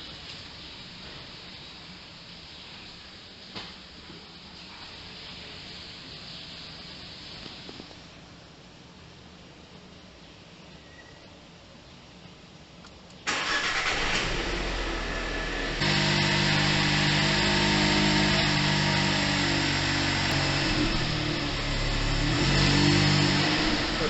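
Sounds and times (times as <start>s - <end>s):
car engine starting and idling: 13.2s - 24.0s.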